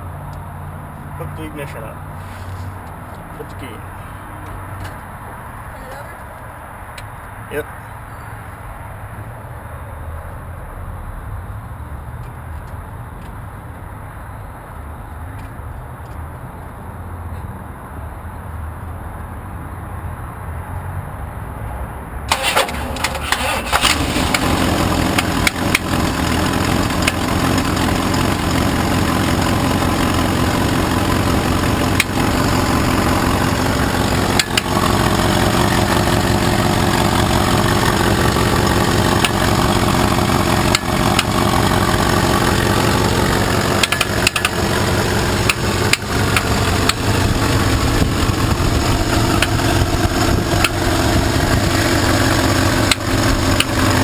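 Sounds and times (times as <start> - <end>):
engine cranking and starting: 22.3 - 29.2, 30.2 - 54.0
engine idling: 22.3 - 54.0
engine knocking ticks: 24.2 - 32.4, 34.3 - 36.7, 37.3 - 54.0.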